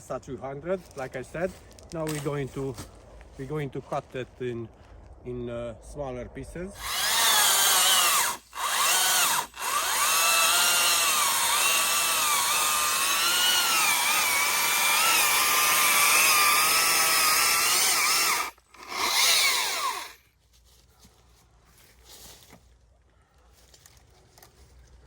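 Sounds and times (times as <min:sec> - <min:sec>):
electric chainsaw whining: 0:06.8 - 0:20.2.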